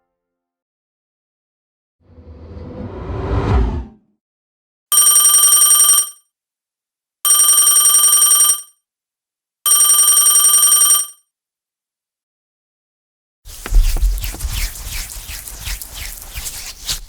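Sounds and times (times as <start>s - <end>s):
telephone bell ringing: 4.9s - 6.2s, 7.3s - 8.8s, 9.7s - 11.2s.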